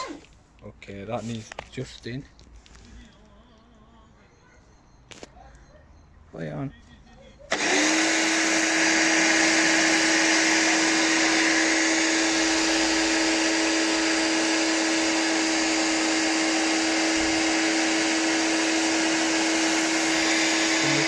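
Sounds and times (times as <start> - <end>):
pressure washer motor hum: 7.5 - 21.0
loud hiss of spray: 19.7 - 21.0.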